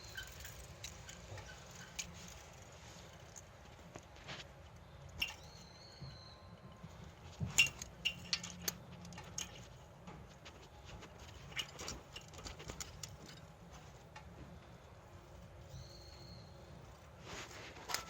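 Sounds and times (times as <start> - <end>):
sharp clicks and light clinks: 0.0 - 2.4, 7.6 - 9.7.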